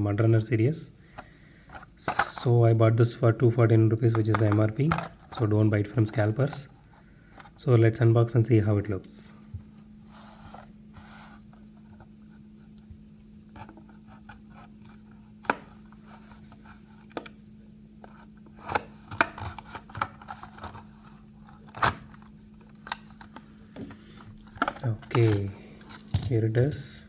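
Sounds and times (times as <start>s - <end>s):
steady low hum: 0.0s - 27.0s
plastic and cardboard clicks and scrapes: 18.0s - 26.7s.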